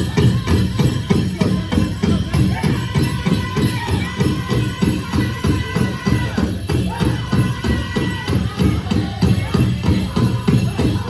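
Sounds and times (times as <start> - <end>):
big drum pounding fast beat: 0.0 - 11.0
dance bells jingling: 0.0 - 11.0.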